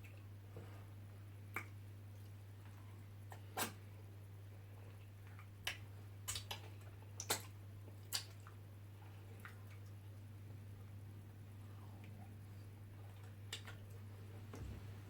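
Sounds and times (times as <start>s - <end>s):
wet eating squishes and smacks: 1.4s - 3.9s, 4.8s - 11.0s, 11.9s - 14.8s.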